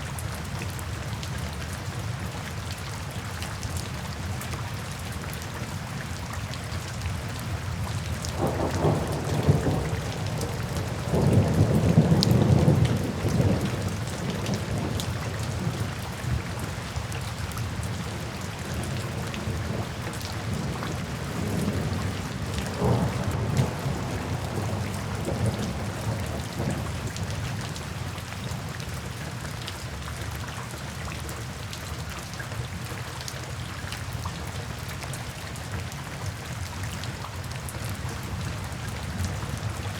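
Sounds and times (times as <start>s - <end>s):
steady rain: 0.0s - 39.9s
rolling thunder: 8.1s - 16.7s, 17.8s - 27.4s.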